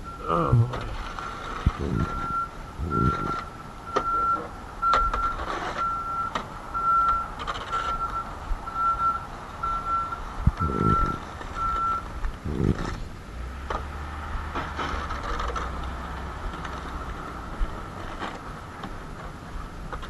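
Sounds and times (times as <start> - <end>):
backup alarm beeping: 1.7 - 12.0.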